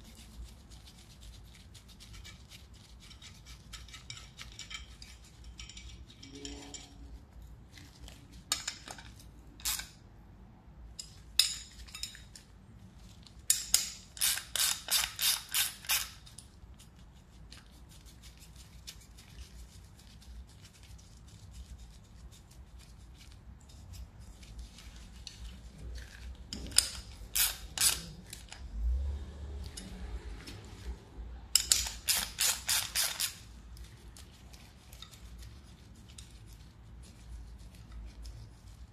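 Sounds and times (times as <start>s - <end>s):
ratchet wrench clicking: 13.5s - 16.1s, 26.7s - 28.0s, 31.6s - 33.4s.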